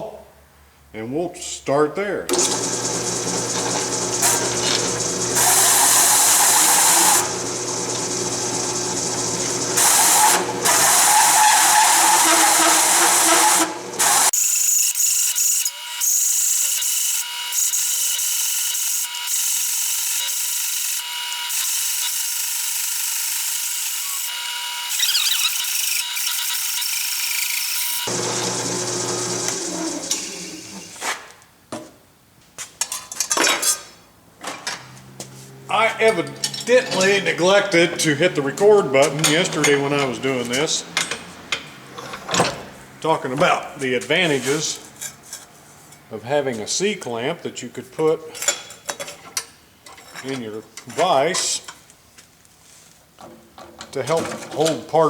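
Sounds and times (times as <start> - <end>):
drill press motor hum: 2.3 - 14.4, 16.7 - 31.0
hole saw grinding metal: 2.3 - 31.0
metal clanks and clinks: 36.2 - 37.2.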